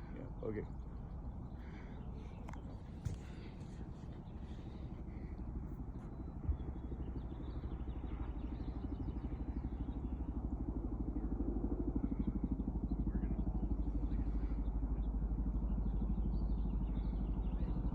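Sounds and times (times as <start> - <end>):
helicopter rotors thumping: 2.0 - 9.0.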